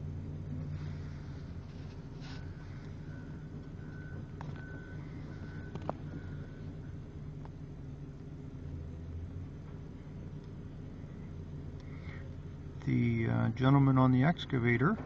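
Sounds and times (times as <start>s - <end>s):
diesel engine rumble: 0.0s - 15.0s
reversing alarm beeping: 2.3s - 7.1s.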